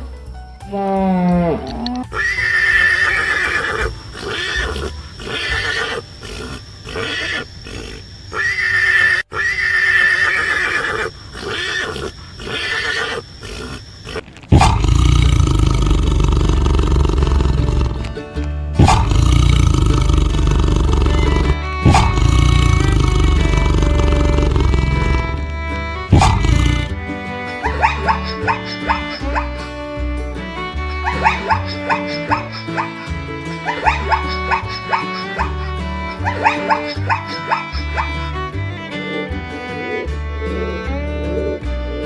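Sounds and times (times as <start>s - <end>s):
lion roaring: 0.8s - 2.1s, 14.5s - 18.2s, 18.8s - 29.5s
shrill animal calls: 1.5s - 18.1s, 18.8s - 41.6s.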